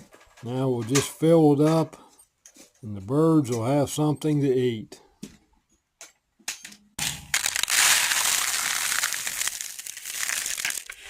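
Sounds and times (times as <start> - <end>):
bird seed pouring: 7.4 - 11.0.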